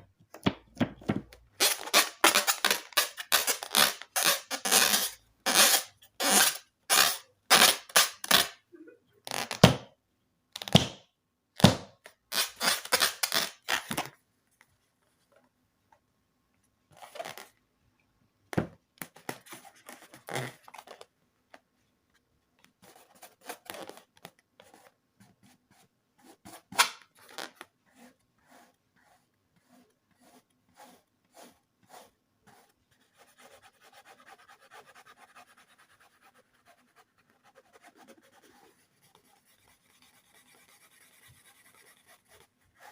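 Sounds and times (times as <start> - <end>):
crafting crackles taps and scrapes: 18.9 - 25.6.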